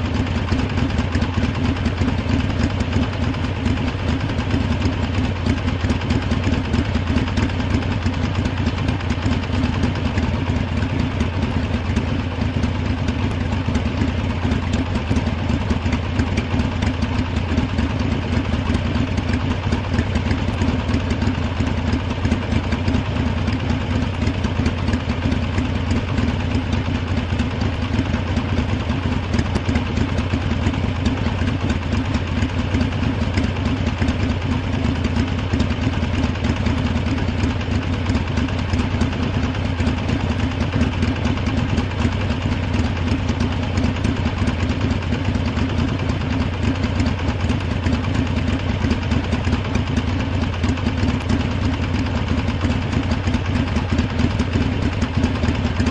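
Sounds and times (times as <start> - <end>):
motorcycle engine idling: 0.0 - 55.9.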